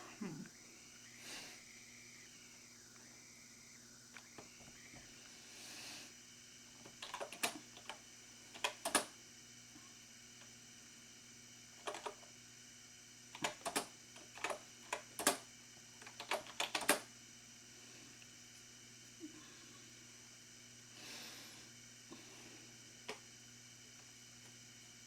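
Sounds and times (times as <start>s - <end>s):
keyboard keystrokes clacking: 6.9s - 8.0s, 8.6s - 9.1s, 11.8s - 12.2s, 13.4s - 15.4s, 16.0s - 17.0s.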